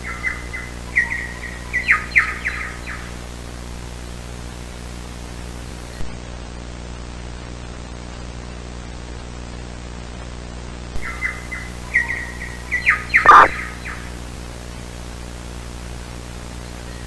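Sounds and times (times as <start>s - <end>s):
bird-like chirps: 0.0s - 3.2s, 11.0s - 14.4s, 16.6s - 17.0s
low hum: 0.0s - 6.0s, 11.0s - 17.0s
static hiss: 0.0s - 6.1s, 11.0s - 17.0s.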